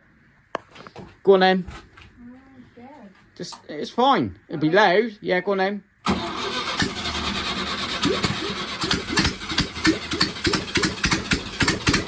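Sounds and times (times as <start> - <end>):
engine cranking and firing: 6.0 - 12.0.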